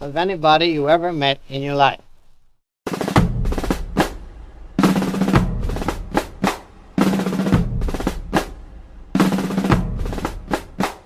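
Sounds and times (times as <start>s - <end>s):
drum hits pattern: 2.9s - 11.0s
low bass note: 3.2s - 10.6s.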